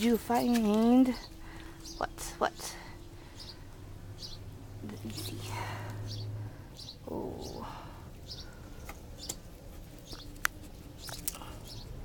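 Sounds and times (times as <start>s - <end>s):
small bird chirping: 3.3s - 12.0s.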